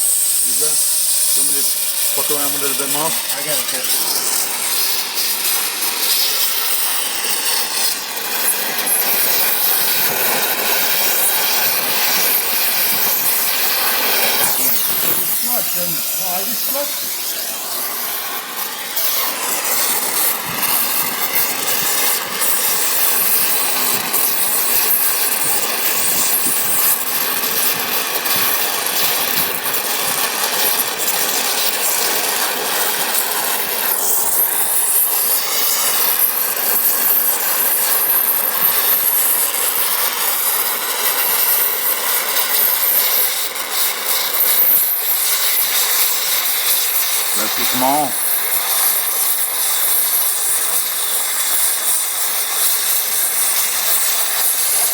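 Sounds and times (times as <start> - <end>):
plasma torch hissing: 0.0 - 54.9.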